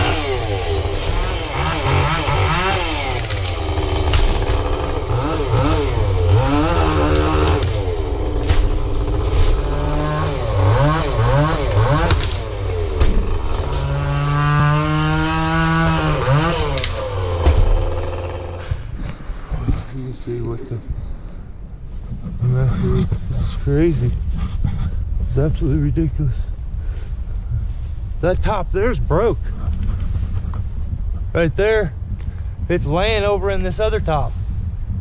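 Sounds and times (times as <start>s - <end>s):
chainsaw engine revving: 0.0s - 19.0s.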